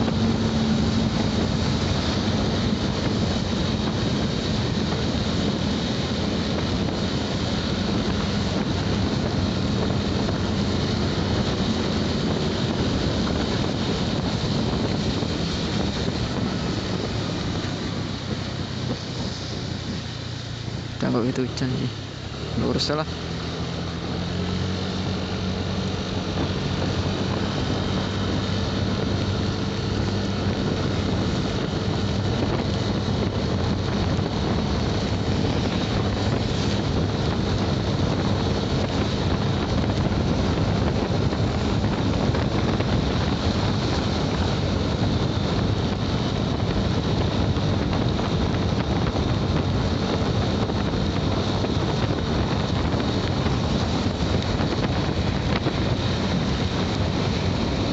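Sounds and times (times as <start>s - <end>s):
motorcycle engine humming: 0.0s - 57.9s
wind rushing over microphone: 0.0s - 57.9s.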